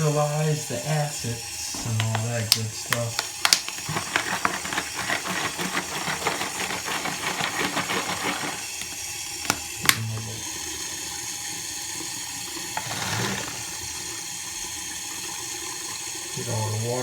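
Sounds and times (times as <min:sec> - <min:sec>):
tap water splashing into container: 0:01.7 - 0:16.7
sharp clicks: 0:02.0 - 0:04.3.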